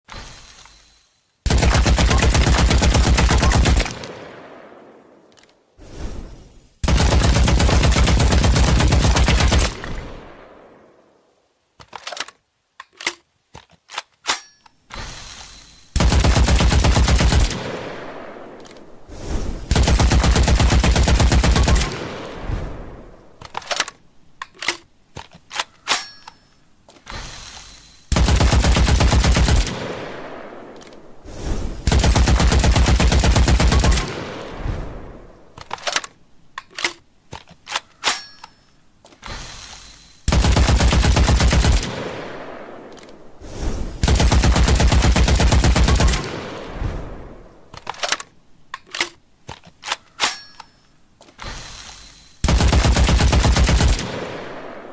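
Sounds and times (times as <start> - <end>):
automatic gunfire bursts with echo: 1.5 - 4.6, 6.8 - 9.8, 16.0 - 18.4, 19.7 - 22.3, 28.1 - 30.5, 31.8 - 34.4, 40.3 - 42.7, 44.0 - 46.6, 52.4 - 54.9.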